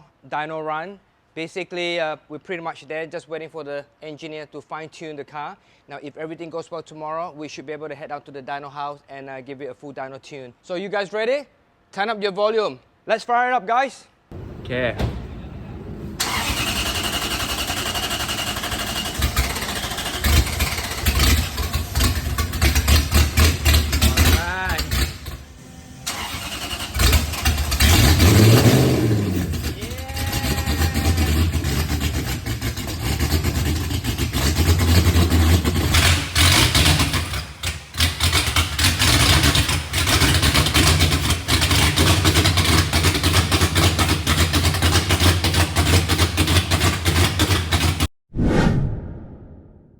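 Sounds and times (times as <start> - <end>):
car engine revving and idling: 14.3 - 48.1.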